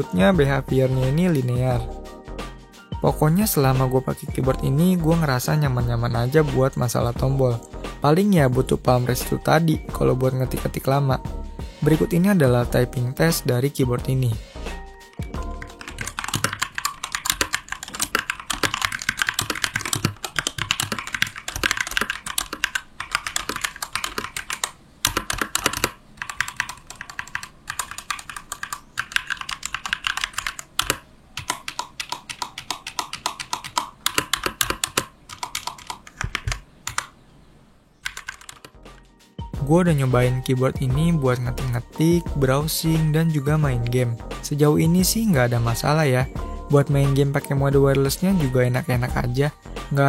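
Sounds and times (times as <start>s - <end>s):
mechanical keyboard typing: 15.0s - 37.1s, 38.0s - 38.8s.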